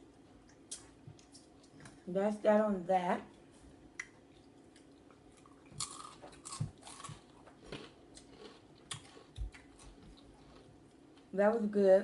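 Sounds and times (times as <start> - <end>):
person chewing crunchy food: 3.4 - 11.3.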